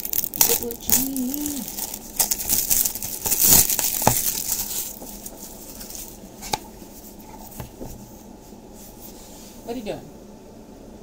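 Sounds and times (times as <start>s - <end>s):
card pack packaging crinkling: 0.0s - 6.6s.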